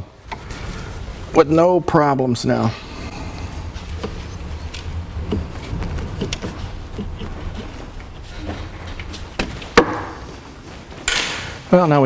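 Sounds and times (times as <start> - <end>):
steady low hum: 0.0 - 12.0
metal clicks and knocks: 3.7 - 10.3.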